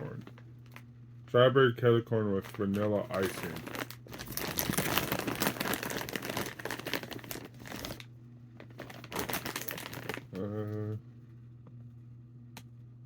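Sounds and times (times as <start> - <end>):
plastic snack bag crinkling: 2.4 - 10.6.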